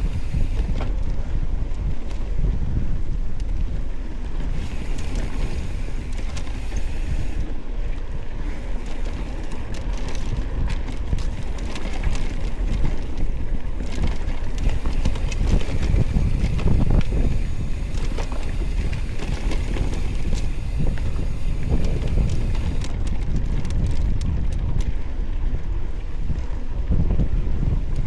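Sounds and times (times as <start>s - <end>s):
bike frame rattling and knocking: 0.0s - 1.2s, 4.5s - 7.5s, 8.4s - 24.1s
wind rushing over microphone: 0.0s - 28.0s.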